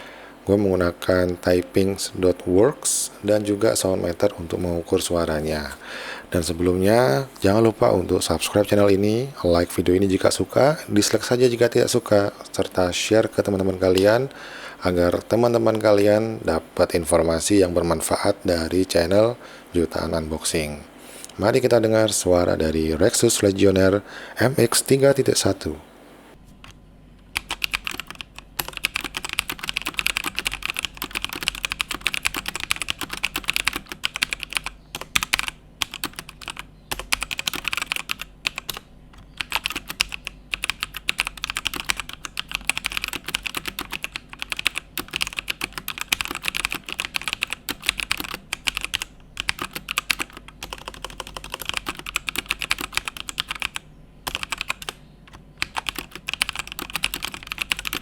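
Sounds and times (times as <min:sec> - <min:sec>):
mechanical keyboard typing: 0:26.6 - 0:58.0.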